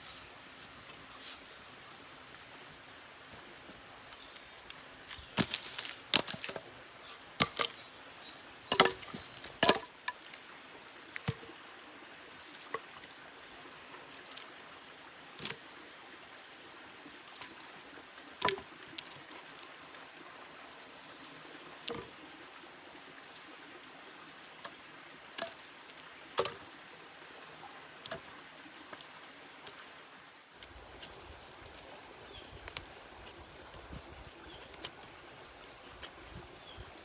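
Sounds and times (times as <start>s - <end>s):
wooden knocks and cracks: 5.4s - 6.7s, 7.4s - 7.8s, 8.7s - 10.4s, 18.4s - 19.2s, 21.8s - 22.1s, 26.4s - 26.6s.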